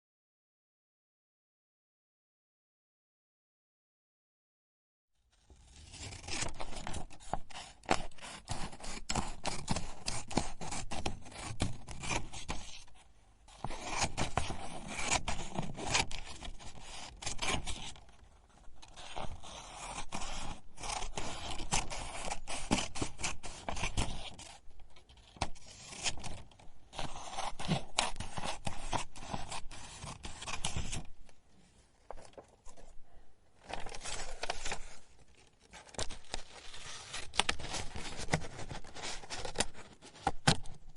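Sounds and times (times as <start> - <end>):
paper being cut: 18.8 - 24.6, 25.4 - 31.1.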